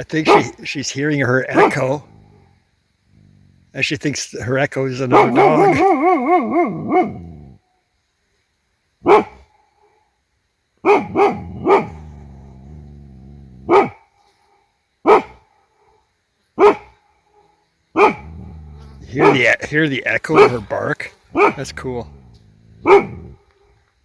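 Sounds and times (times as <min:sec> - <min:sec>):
dog barking: 0:00.2 - 0:00.6, 0:01.4 - 0:02.4, 0:05.0 - 0:07.5, 0:09.0 - 0:09.4, 0:10.8 - 0:12.6, 0:13.6 - 0:14.0, 0:15.0 - 0:15.4, 0:16.6 - 0:17.0, 0:18.0 - 0:23.4
echo of barks: 0:00.2 - 0:00.7, 0:01.4 - 0:02.4, 0:05.0 - 0:07.4, 0:09.0 - 0:09.4, 0:10.8 - 0:12.4, 0:13.6 - 0:14.0, 0:15.1 - 0:15.4, 0:16.6 - 0:16.9, 0:18.0 - 0:23.5.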